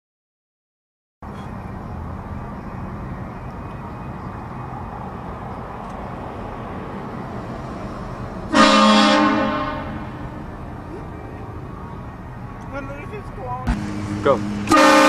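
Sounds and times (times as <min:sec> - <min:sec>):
steady background noise: 0:01.2 - 0:15.0
air train horn blast: 0:08.5 - 0:10.4, 0:13.8 - 0:15.0.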